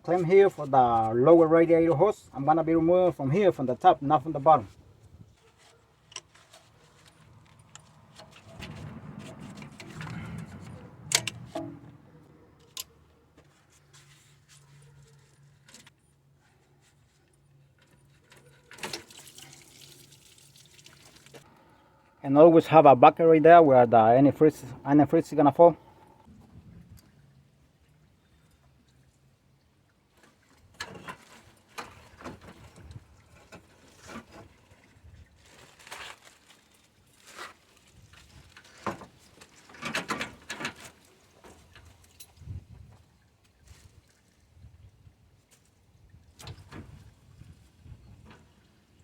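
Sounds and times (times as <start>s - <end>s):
knocks and scrapes: 5.3s - 17.1s, 30.2s - 34.8s.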